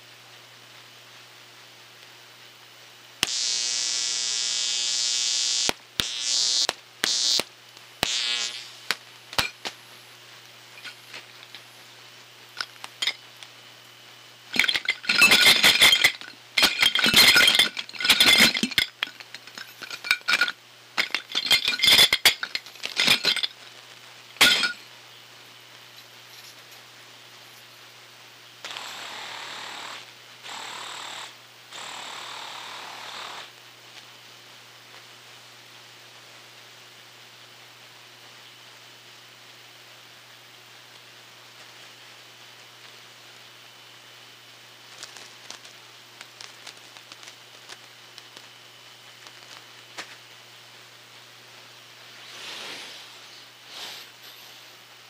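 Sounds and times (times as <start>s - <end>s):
steady hiss: 0.0s - 55.0s
sharp clicks and ticks: 3.2s - 9.0s
electric razor buzzy hiss: 3.2s - 9.8s, 28.6s - 33.6s, 52.1s - 54.7s.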